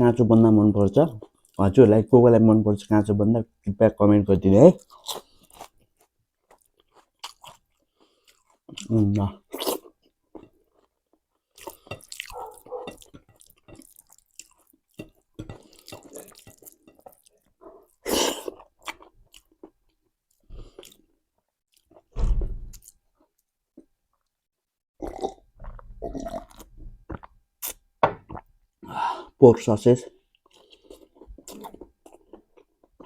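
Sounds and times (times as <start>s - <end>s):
chewing raw cabbage: 4.8s - 22.1s.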